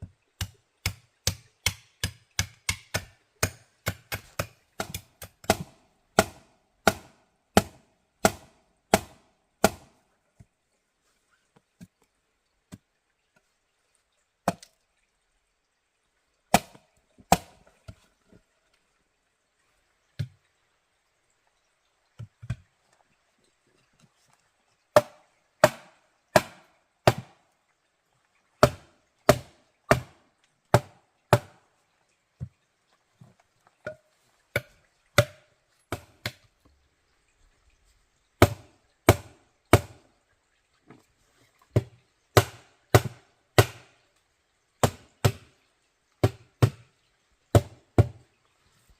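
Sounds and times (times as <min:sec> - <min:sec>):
blade chopping wood: 0:00.4 - 0:09.9, 0:25.0 - 0:27.3, 0:28.6 - 0:30.1, 0:30.7 - 0:31.6, 0:34.5 - 0:36.4, 0:38.4 - 0:40.0, 0:41.8 - 0:43.9, 0:44.8 - 0:45.5, 0:46.2 - 0:46.8.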